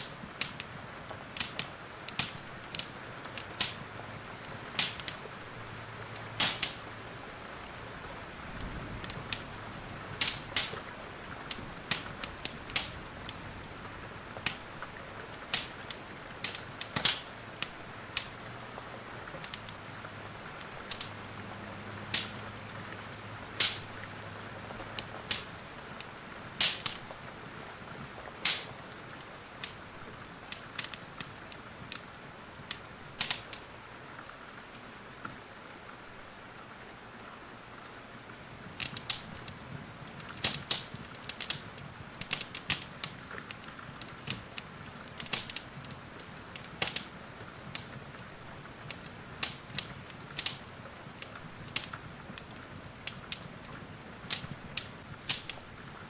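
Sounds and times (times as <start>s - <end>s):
wood fire crackling and popping: 0.0s - 34.4s, 37.8s - 56.0s
steady rain hiss: 0.0s - 56.0s.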